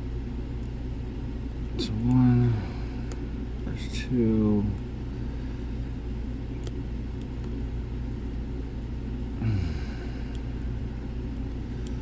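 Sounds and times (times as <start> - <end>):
low background rumble: 0.0 - 12.0
person grunting: 9.4 - 10.2.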